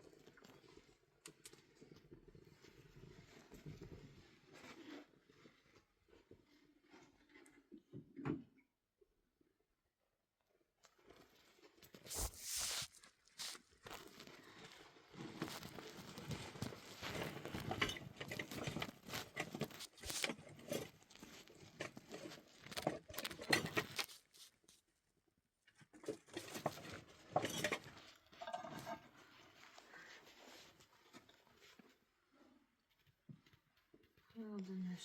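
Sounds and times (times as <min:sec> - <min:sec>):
light clicks and clatter: 0:00.0 - 0:08.4, 0:13.5 - 0:24.9
rustling and crinkling: 0:10.8 - 0:25.1, 0:25.7 - 0:35.0.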